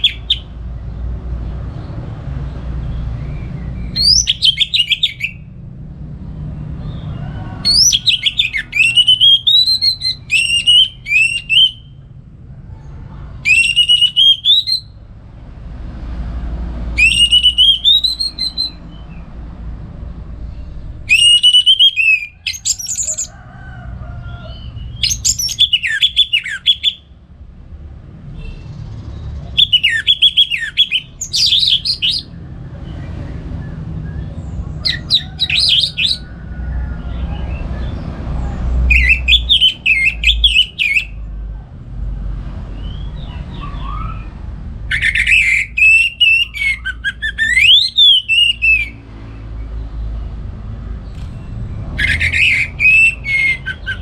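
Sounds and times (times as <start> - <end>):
thrush singing whistled notes: 0.0 - 0.6, 3.2 - 5.6, 7.7 - 12.0, 13.4 - 15.0, 16.9 - 19.3, 21.1 - 23.3, 24.9 - 27.1, 29.4 - 32.4, 33.5 - 36.3, 38.9 - 41.2, 44.9 - 49.1, 52.0 - 54.0
steady low rumble: 18.0 - 21.1.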